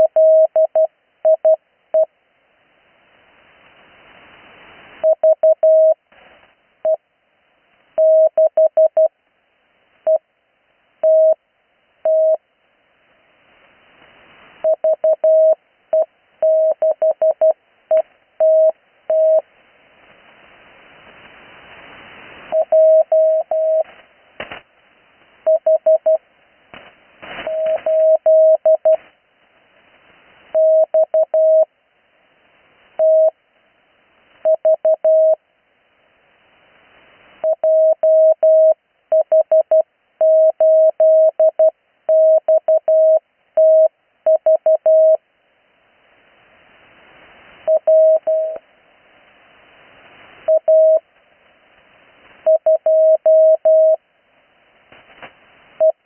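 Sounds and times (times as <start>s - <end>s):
static crackles: 0.0s - 56.0s
radio band hiss: 19.4s - 25.4s, 26.6s - 30.6s, 54.6s - 55.8s
morse code tone: 22.5s - 23.8s, 27.4s - 29.0s, 47.7s - 48.6s, 50.5s - 51.0s, 52.5s - 54.0s.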